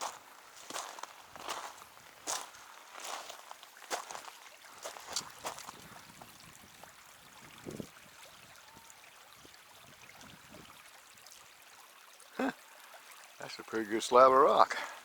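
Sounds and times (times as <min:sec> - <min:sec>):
soft footsteps: 0:00.0 - 0:05.9
creek trickling over rock: 0:00.0 - 0:15.0.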